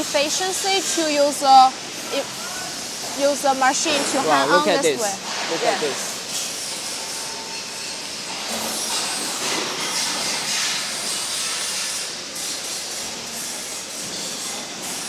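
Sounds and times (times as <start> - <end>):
factory machinery hiss: 0.0 - 15.0.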